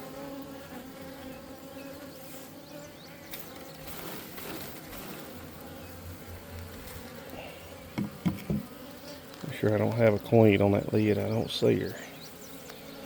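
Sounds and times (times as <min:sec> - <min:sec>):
bees buzzing: 0:00.0 - 0:13.0
short bumps: 0:07.9 - 0:08.8.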